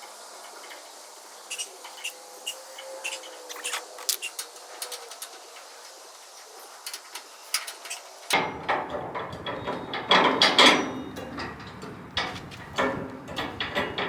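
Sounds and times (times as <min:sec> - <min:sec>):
clattering and banging: 0:07.0 - 0:14.0.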